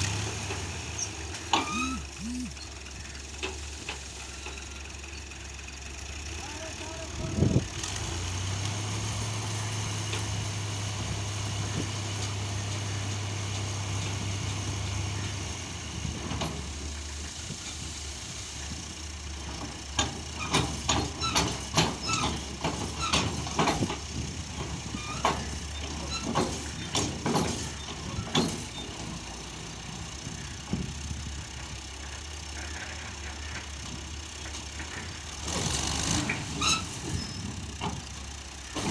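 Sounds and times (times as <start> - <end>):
tractor engine running: 0.0 - 38.9
steady hum: 1.7 - 2.6.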